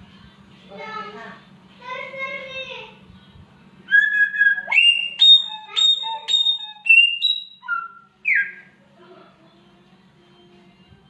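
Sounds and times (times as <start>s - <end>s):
songbird whistling: 3.9s - 8.8s.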